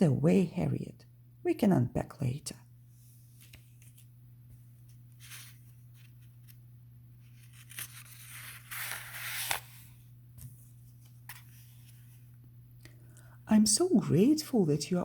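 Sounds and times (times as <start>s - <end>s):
faint electrical hum: 0.0s - 15.0s
book page rustling: 3.1s - 12.3s.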